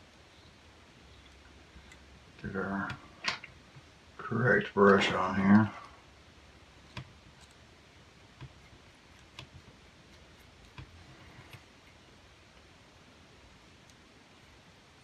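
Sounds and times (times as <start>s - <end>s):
faint clicks and taps of tools: 1.2s - 3.9s, 6.8s - 7.6s, 8.2s - 12.7s.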